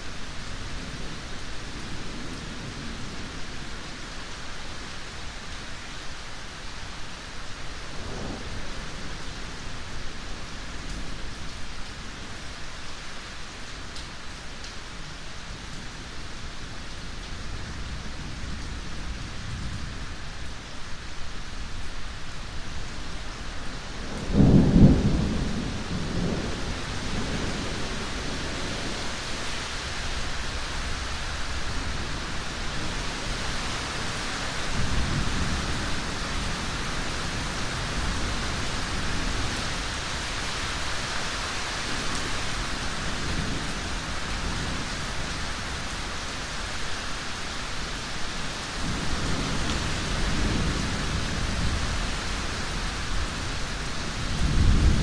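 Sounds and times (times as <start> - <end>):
steady rain: 0.0 - 55.0
rolling thunder: 24.0 - 29.1, 54.1 - 55.0.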